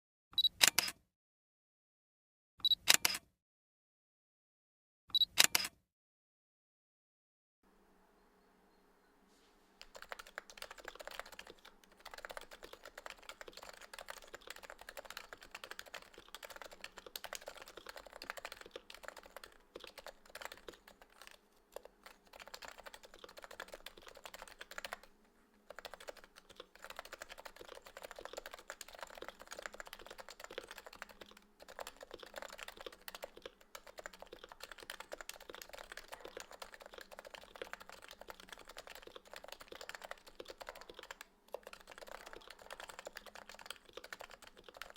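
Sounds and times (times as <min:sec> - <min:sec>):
keyboard typing: 0:09.8 - 0:44.9.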